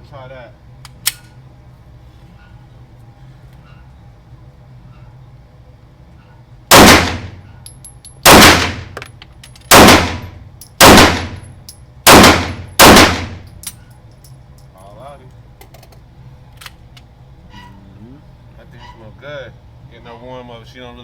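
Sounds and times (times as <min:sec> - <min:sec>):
pistol shots with echo: 0:06.7 - 0:07.4, 0:08.2 - 0:09.0, 0:09.7 - 0:11.5, 0:12.1 - 0:13.5.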